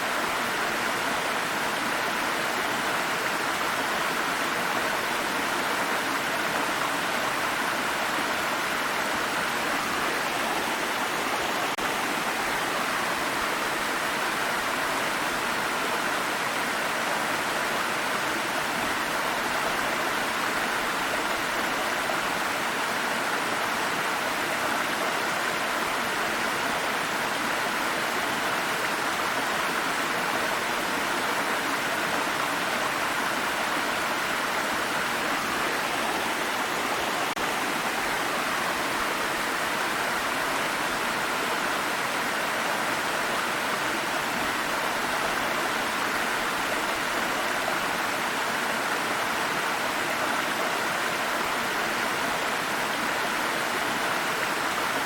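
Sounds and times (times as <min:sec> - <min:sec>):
stream running over rocks: 0:00.0 - 0:55.0.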